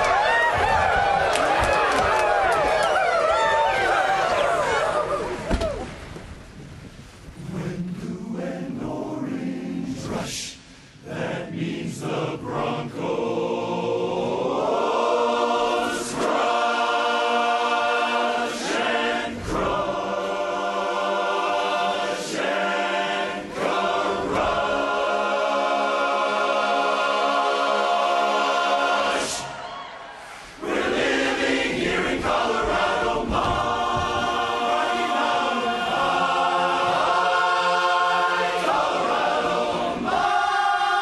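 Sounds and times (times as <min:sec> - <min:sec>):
barbershop chorus singing: 0:07.4 - 0:29.6, 0:30.6 - 0:41.0.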